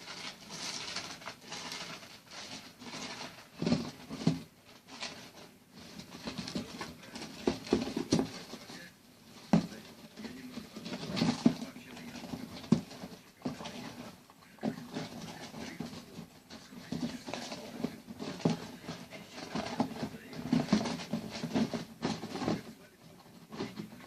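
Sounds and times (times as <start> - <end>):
hamster scrabbling in bedding: 0.0 - 24.0.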